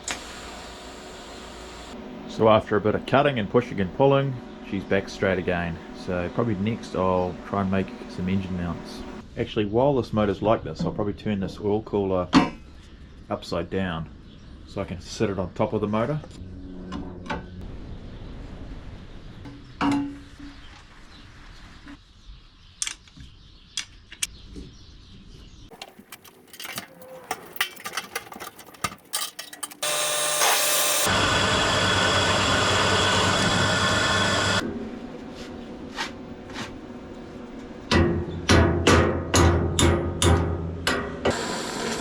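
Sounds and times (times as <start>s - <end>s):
power tool running: 0.0s - 9.2s, 29.7s - 34.6s, 41.3s - 42.0s.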